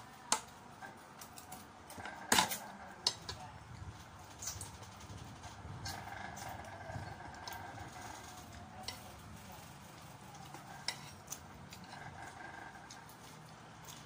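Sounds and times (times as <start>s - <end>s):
utensils clinking against dishes: 5.8s - 13.2s.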